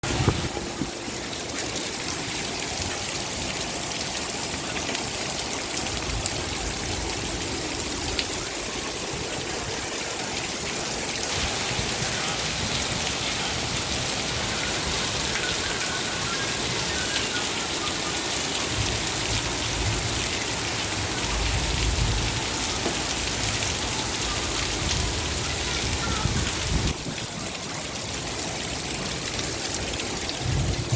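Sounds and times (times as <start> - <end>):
steady rain falling: 0.0 - 30.9.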